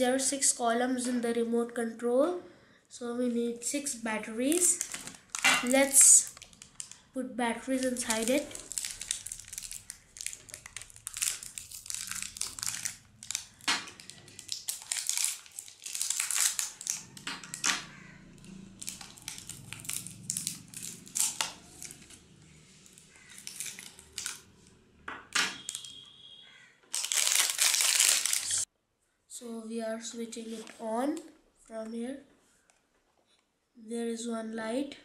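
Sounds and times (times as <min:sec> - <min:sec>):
plastic crinkling: 0:04.4 - 0:07.0, 0:07.7 - 0:18.1, 0:18.8 - 0:24.5, 0:25.5 - 0:26.0, 0:26.9 - 0:28.7
batteries clicking and rattling: 0:04.5 - 0:07.0, 0:07.7 - 0:17.8, 0:18.8 - 0:22.2, 0:22.9 - 0:24.5, 0:26.9 - 0:28.6.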